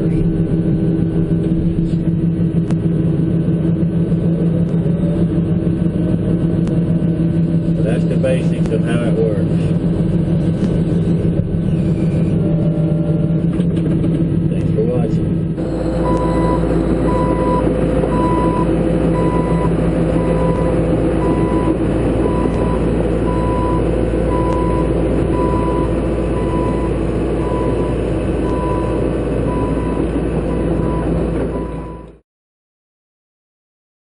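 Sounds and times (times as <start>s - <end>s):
excavator diesel engine running: 0.0s - 32.2s
travel alarm beeping: 15.6s - 32.2s.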